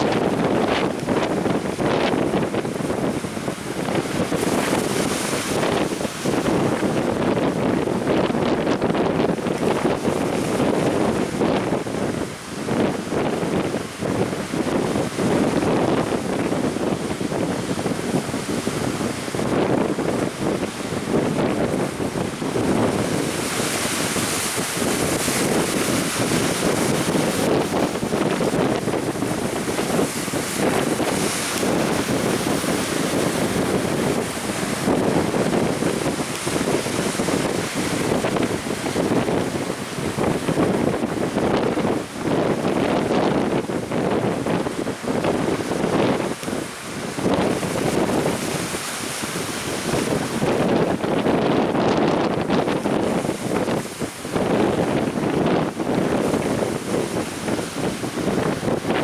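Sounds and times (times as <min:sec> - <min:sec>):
strong wind buffeting microphone: 0:00.0 - 0:59.0
waves breaking: 0:00.0 - 0:59.0.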